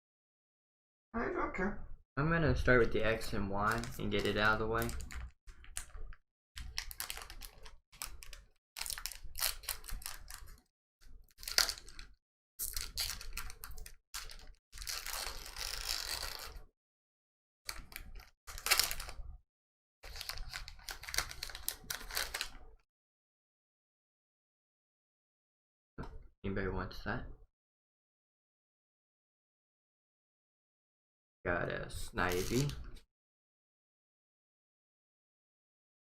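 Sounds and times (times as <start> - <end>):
cards being handled: 3.3 - 6.0, 6.6 - 10.6, 11.4 - 16.6, 17.7 - 19.2, 20.0 - 22.6, 32.2 - 32.8
foil wrapper crinkling and tearing: 3.6 - 6.0, 6.6 - 16.6, 17.7 - 19.2, 20.0 - 22.6, 32.2 - 32.8.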